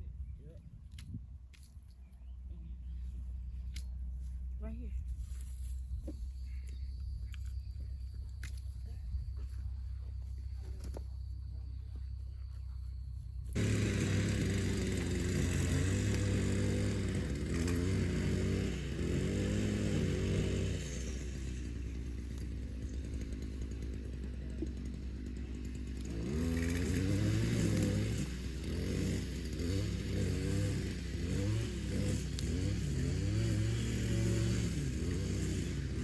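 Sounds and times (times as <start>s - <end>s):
small petrol engine revving: 13.5s - 36.0s.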